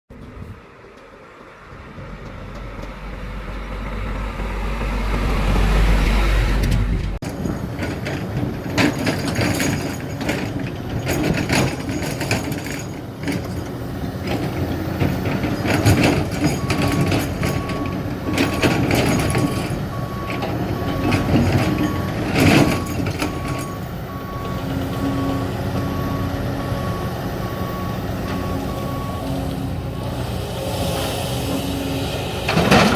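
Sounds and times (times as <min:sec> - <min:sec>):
diesel machinery rumble: 0:00.1 - 0:32.9
beeping alarm: 0:15.6 - 0:29.5.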